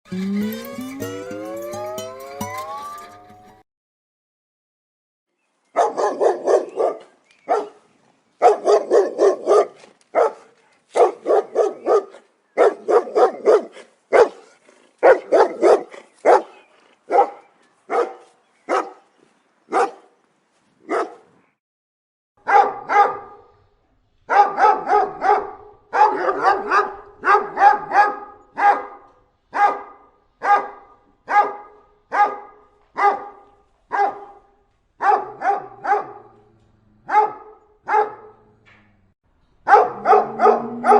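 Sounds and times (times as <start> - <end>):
dogs barking angrily: 5.8 - 7.8, 8.4 - 19.0, 19.7 - 20.1, 20.9 - 21.3, 22.4 - 23.5, 24.3 - 38.5, 39.6 - 40.9.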